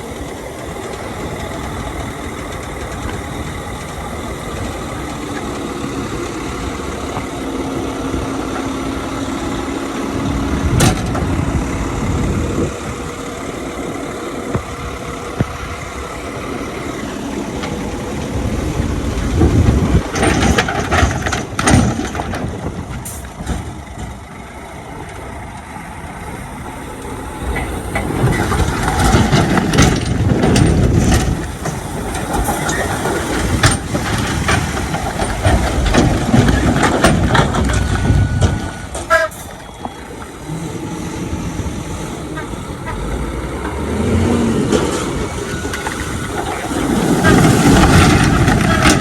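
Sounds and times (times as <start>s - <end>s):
diesel machinery engines running: 0.0s - 49.0s
metal clanks and knocks: 10.7s - 11.4s, 19.4s - 24.4s, 27.5s - 39.9s, 44.6s - 49.0s.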